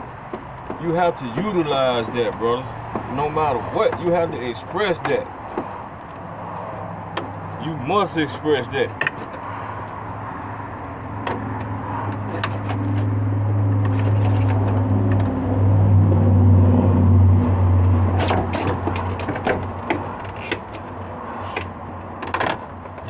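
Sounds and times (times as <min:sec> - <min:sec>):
vehicle engine humming: 0:00.0 - 0:23.0.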